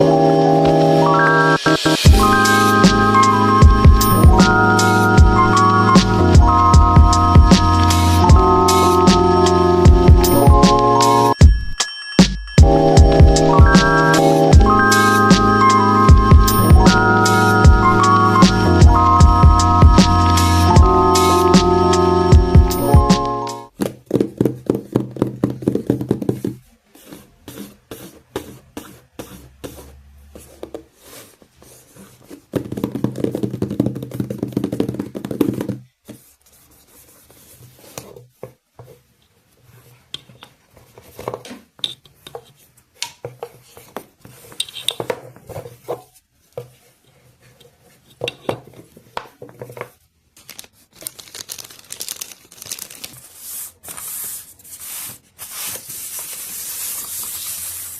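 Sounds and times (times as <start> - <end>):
packaging rustling and tearing: 50.4 - 57.5.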